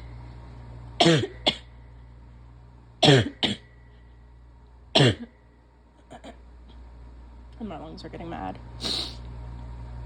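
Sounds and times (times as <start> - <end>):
person coughing: 1.0 - 1.7, 3.0 - 3.7, 4.9 - 5.4, 6.0 - 6.4.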